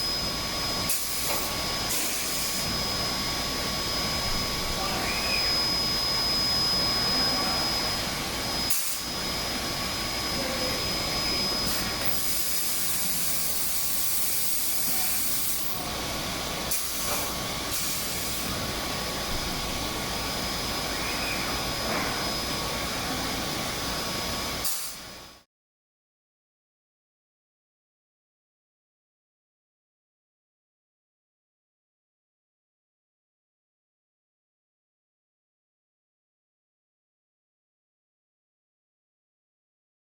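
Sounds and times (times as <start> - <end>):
machine high whine: 0.0 - 25.4
loud hissing bursts: 0.9 - 2.7, 8.1 - 21.6.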